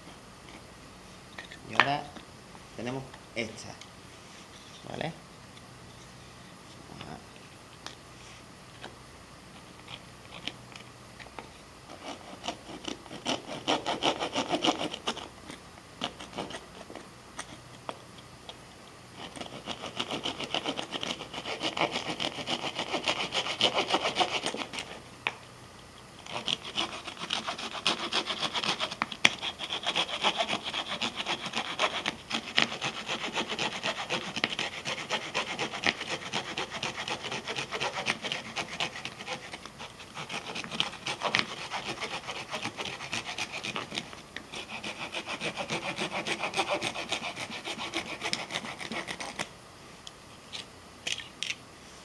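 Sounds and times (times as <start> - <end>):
saw cutting through log: 12.0 - 15.3, 19.2 - 25.0, 26.3 - 49.4.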